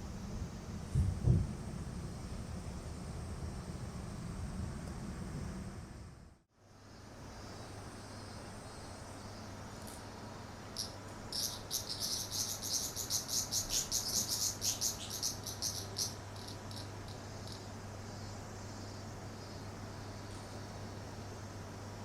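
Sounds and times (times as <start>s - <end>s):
cicada buzzing pulses: 6.8s - 22.0s.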